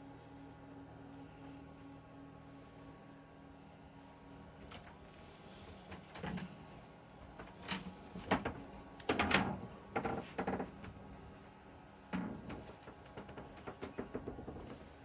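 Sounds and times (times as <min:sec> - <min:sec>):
low steady background hum: 0:00.0 - 0:15.0
irregular knocks and clatters: 0:07.4 - 0:11.0, 0:12.1 - 0:14.9.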